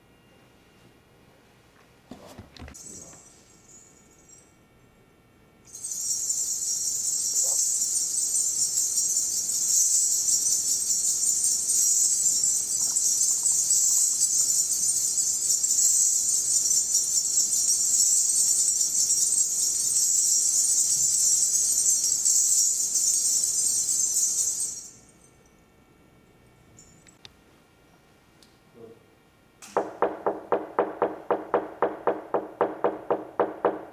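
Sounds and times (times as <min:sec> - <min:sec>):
high continuous jingling: 0:02.7 - 0:04.9, 0:05.7 - 0:27.2.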